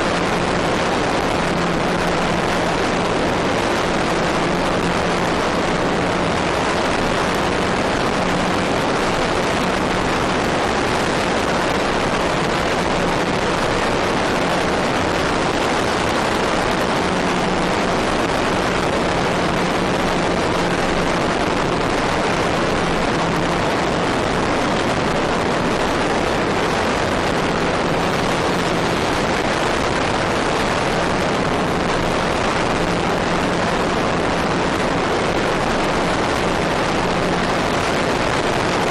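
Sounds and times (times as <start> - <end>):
electric motor and propeller hum: 0.0 - 38.9.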